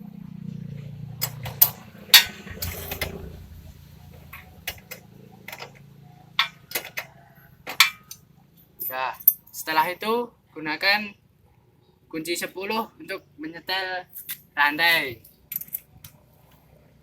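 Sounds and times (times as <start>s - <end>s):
steady low hum: 0.0s - 5.7s
spanner clinking on metal: 1.2s - 3.4s, 6.4s - 7.1s, 7.7s - 8.2s, 8.8s - 9.7s, 14.2s - 14.5s, 15.5s - 15.9s.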